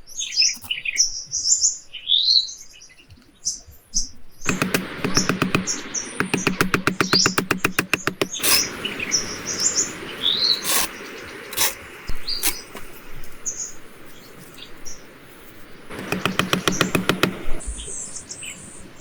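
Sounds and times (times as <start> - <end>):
birds chirping: 0.2 - 19.0
sharp knocks: 4.5 - 8.9, 15.9 - 17.8
fast tapping or knocking: 4.5 - 9.0, 15.9 - 17.8
steady hiss: 4.5 - 18.3.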